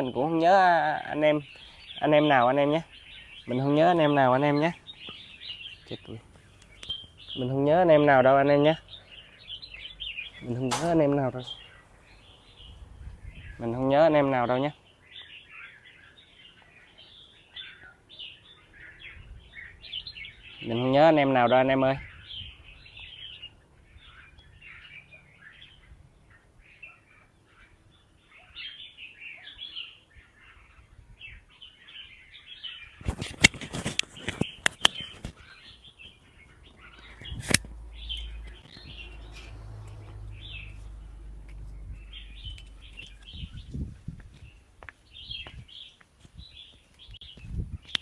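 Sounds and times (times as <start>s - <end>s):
birds chirping and calling: 0.0s - 48.0s
sharp clicks: 33.2s - 35.4s, 37.2s - 39.0s.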